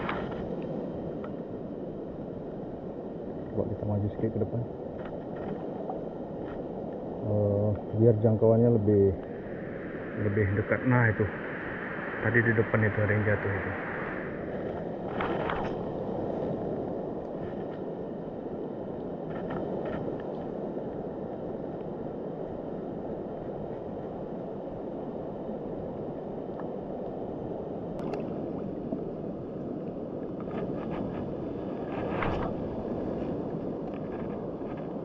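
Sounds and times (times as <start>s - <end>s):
stream water rushing: 0.0s - 3.3s
faint splashes or clicks: 28.0s - 28.4s.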